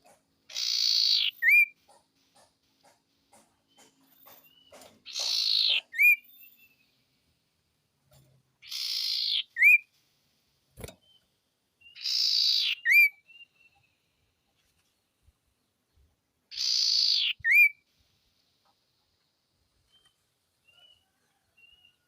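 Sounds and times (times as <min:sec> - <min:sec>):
bird harsh hissing call: 0:00.5 - 0:01.4, 0:05.1 - 0:05.8, 0:08.6 - 0:09.7, 0:12.0 - 0:12.8, 0:16.5 - 0:17.4
bird upward whistle: 0:08.8 - 0:09.8, 0:16.6 - 0:17.7.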